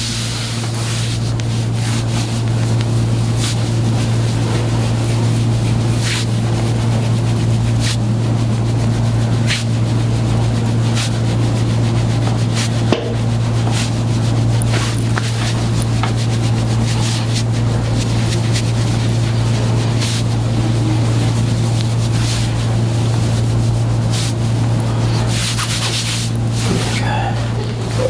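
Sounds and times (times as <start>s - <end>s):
loud motor hum: 0.0s - 28.0s.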